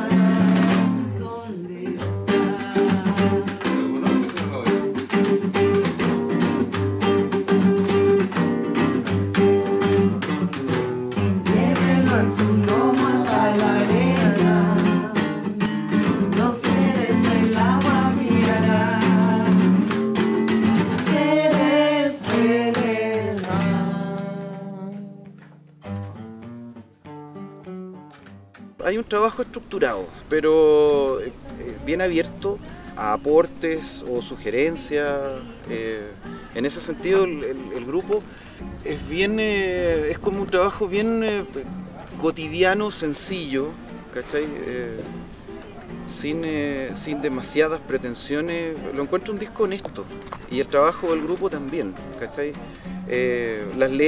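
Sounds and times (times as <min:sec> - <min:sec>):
person singing: 0:00.0 - 0:04.3, 0:11.2 - 0:25.4
guitar strumming: 0:00.0 - 0:54.0.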